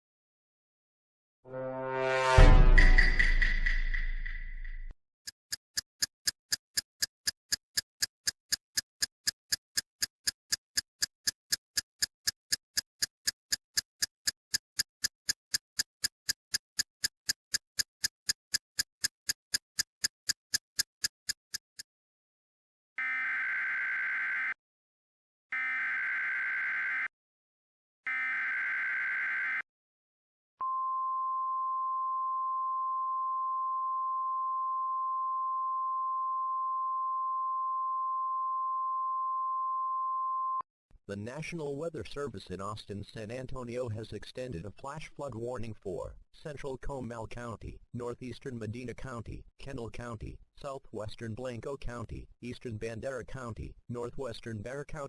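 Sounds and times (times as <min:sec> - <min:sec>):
steady warning alarm tone: 0:23.0 - 0:24.6, 0:25.6 - 0:27.1.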